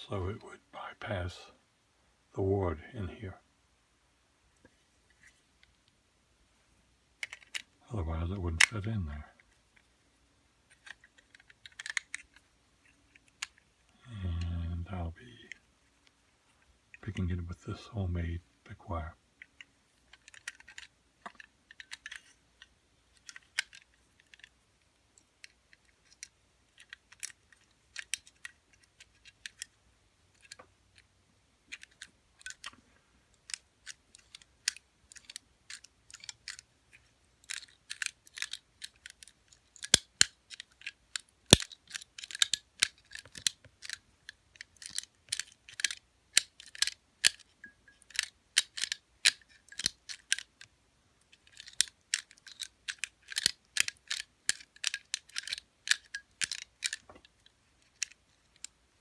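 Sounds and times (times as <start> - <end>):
lock picking metallic clicks: 33.4 - 58.8.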